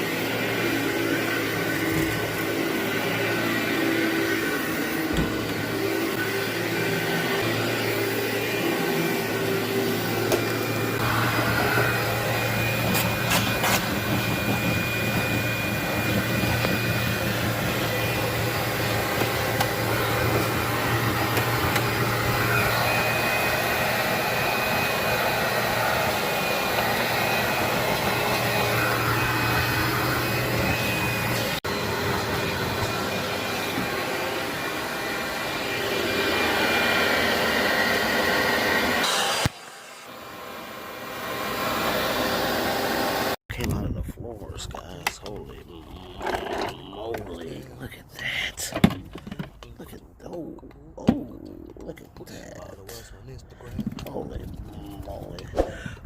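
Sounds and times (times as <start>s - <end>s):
vacuum cleaner running on carpet: 0.0s - 43.4s.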